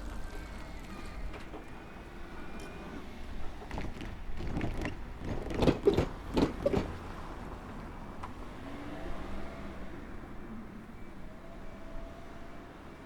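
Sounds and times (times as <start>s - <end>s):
train wheels knocking over rails: 0.7s - 7.4s.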